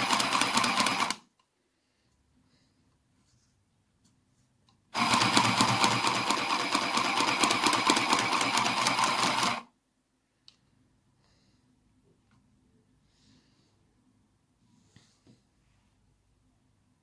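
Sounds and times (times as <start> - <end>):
sewing machine stitching: 0.0 - 1.2, 5.0 - 9.7.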